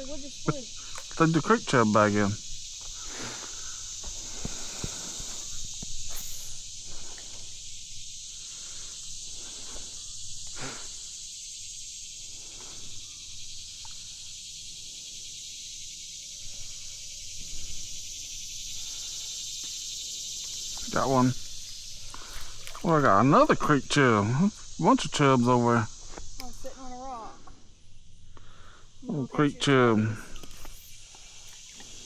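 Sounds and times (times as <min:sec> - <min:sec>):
insects chorus: 0:00.0 - 0:32.0.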